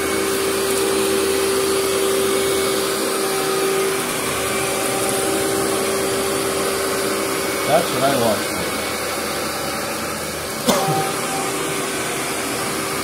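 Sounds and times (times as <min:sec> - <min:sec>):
vacuum cleaner running on carpet: 0:00.0 - 0:13.0
steady tone: 0:10.7 - 0:12.7.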